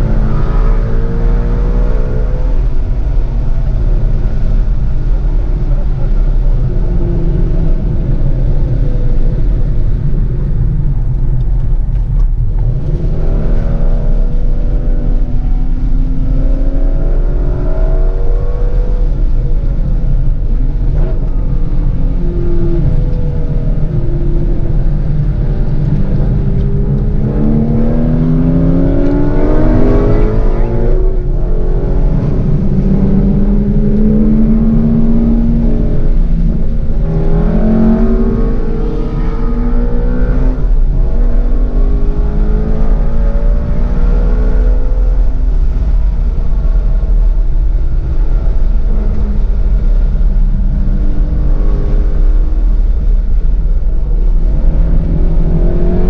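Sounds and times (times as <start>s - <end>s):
car engine accelerating hard: 0.0s - 56.0s.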